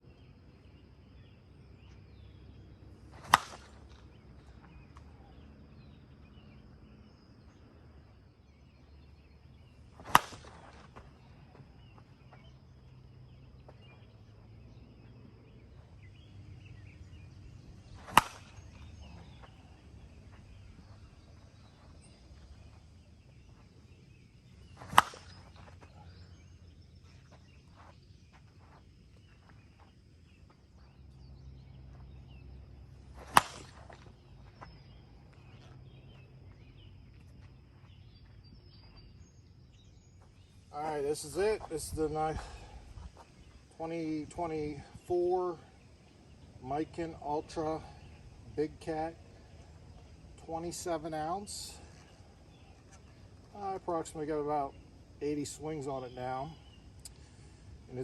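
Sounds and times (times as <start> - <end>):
bat cracking ball off tee: 3.0 - 5.4, 9.6 - 12.4, 15.4 - 23.5, 24.2 - 26.5, 33.1 - 35.5.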